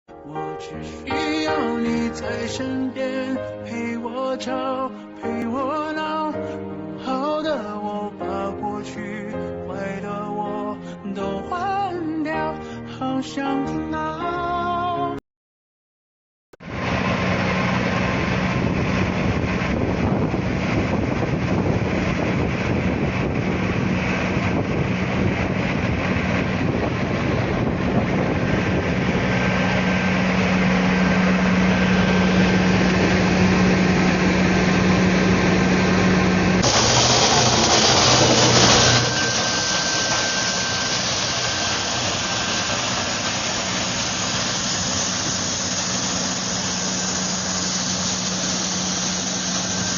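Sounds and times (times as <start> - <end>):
wood chipper running: 16.6 - 49.9.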